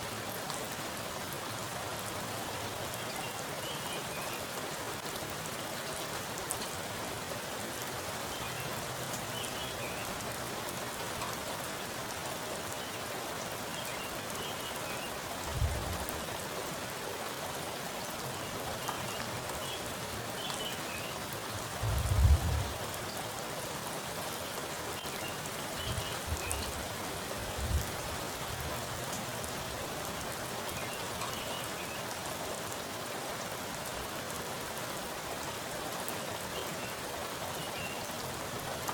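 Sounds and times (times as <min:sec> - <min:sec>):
heavy rain on water: 0:00.0 - 0:38.9.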